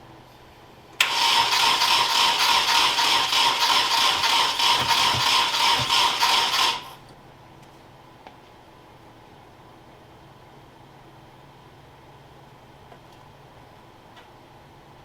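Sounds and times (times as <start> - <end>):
engine cranking on starter: 1.0 - 7.0.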